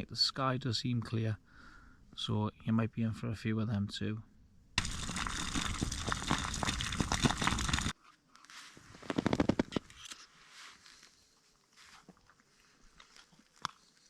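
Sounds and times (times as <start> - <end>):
plastic packaging crinkling: 4.8 - 7.9.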